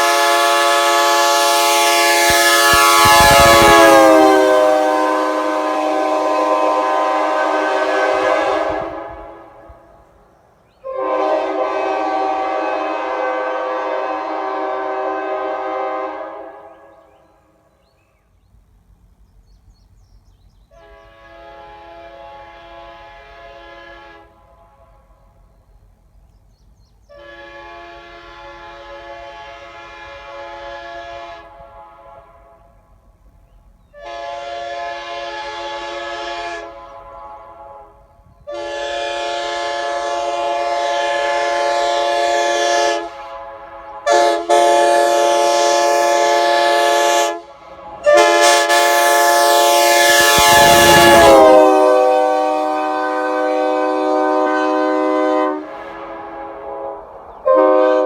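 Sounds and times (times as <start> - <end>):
three-chime air horn blasts: 0.0 - 7.5, 49.4 - 52.6.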